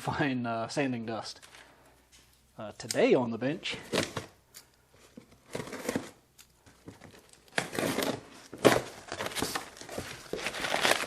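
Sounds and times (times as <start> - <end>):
plastic packaging crinkling: 5.0 - 11.0.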